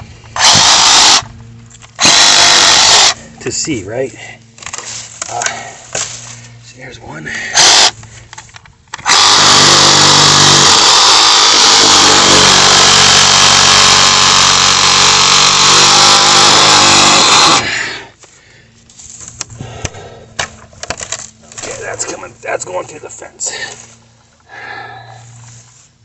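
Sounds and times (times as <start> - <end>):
reciprocating saw cutting wood: 0.4 - 1.3, 2.0 - 3.2, 7.5 - 8.0, 9.0 - 18.1.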